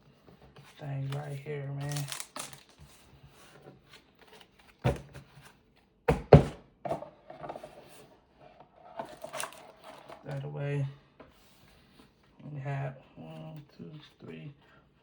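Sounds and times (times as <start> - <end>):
cards rustling: 0.6 - 4.8, 9.0 - 10.4.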